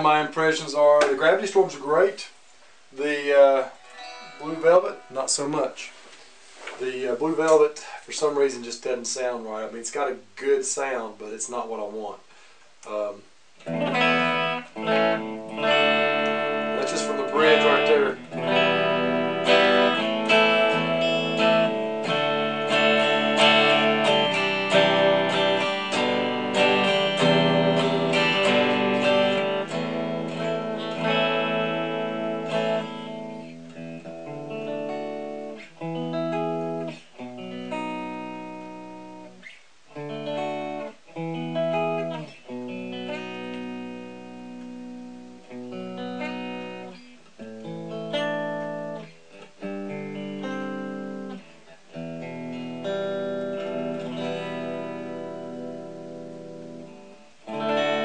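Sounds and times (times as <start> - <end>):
electric guitar through amp: 3.0 - 6.0, 12.3 - 58.0.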